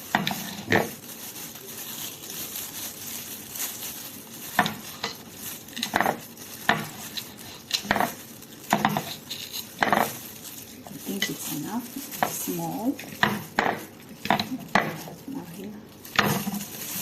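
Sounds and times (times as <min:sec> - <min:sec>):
knife and fork scraping dish: 0:08.8 - 0:10.2.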